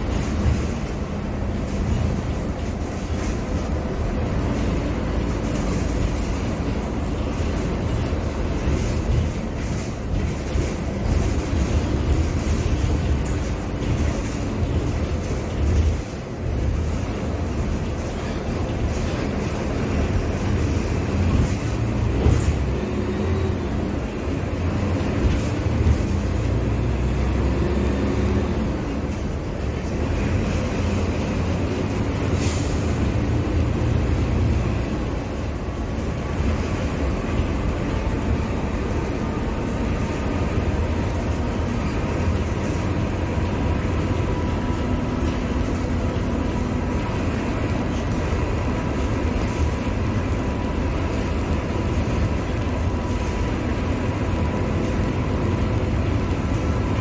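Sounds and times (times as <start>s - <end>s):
diesel bus engine rumbling: 0.0s - 57.0s.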